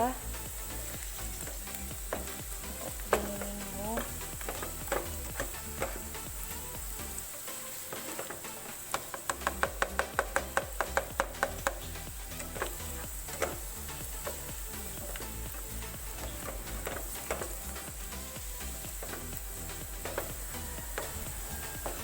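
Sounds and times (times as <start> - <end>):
beans sizzling in a frying pan: 0.0 - 22.0
spatula clicking against pan: 1.4 - 6.1, 7.9 - 14.5, 16.2 - 22.0.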